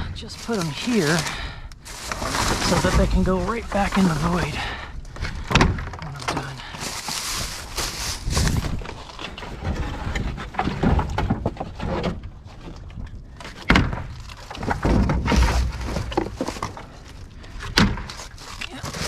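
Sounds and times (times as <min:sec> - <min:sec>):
debris dragged in a dumpster: 0:00.0 - 0:12.2, 0:14.1 - 0:17.1.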